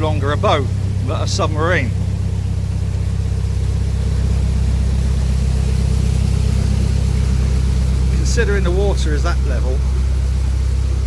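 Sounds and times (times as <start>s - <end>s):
diesel engine throbbing: 0.0s - 11.0s.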